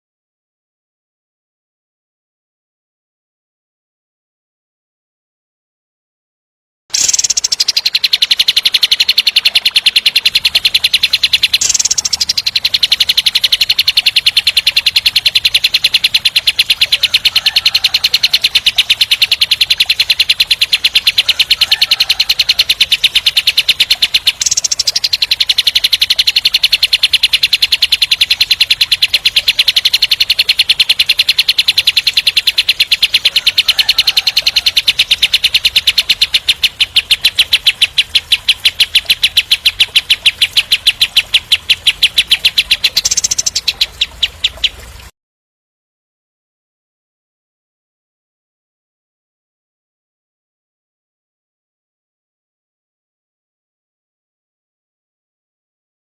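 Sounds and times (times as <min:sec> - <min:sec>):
bird song fast rattling trill: 0:06.9 - 0:45.1.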